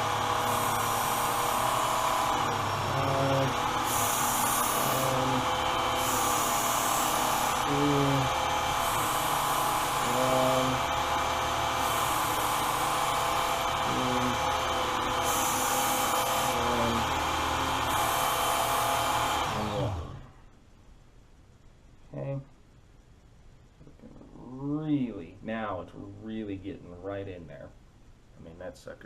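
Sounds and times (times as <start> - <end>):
belt sharpener motor running: 0.0 - 20.3
blade hissing on abrasive belt: 0.0 - 20.3.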